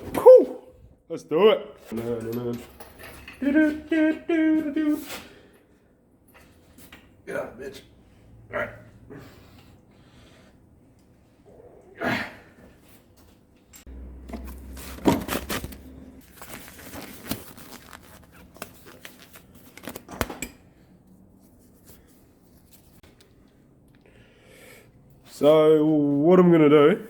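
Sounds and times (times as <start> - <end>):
tools and parts clattering: 1.9 - 3.6.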